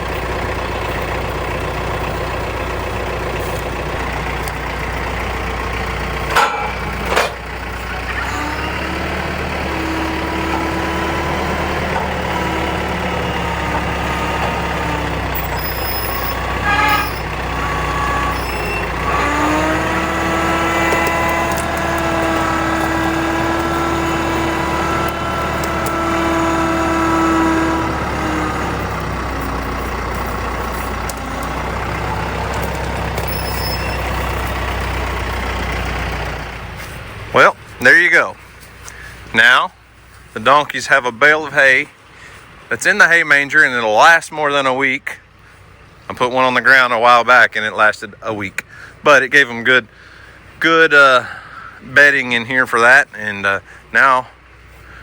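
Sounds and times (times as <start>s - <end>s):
tractor engine running: 0.0s - 55.0s.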